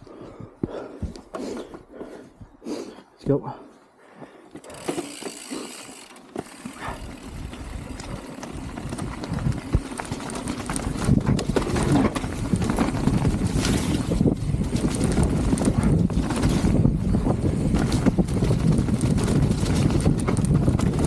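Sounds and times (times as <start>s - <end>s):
bike tyres on dirt: 4.1s - 21.0s
bike rattling over bumps: 4.5s - 21.0s.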